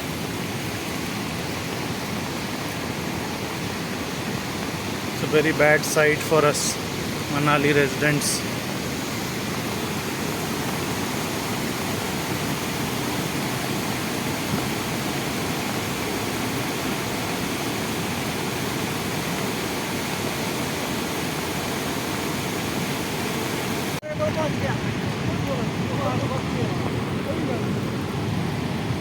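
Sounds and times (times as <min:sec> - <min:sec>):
river water rushing: 0:00.0 - 0:29.0.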